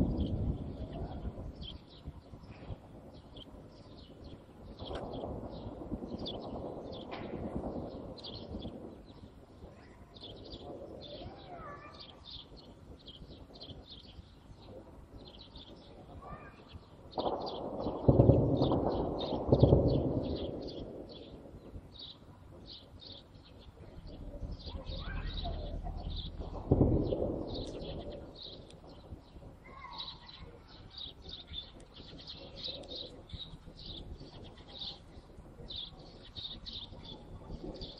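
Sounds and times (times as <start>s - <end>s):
low background rumble: 0.0s - 37.9s
small birds chirping: 0.0s - 37.9s
echoing gunshot: 17.1s - 20.9s, 26.1s - 28.6s.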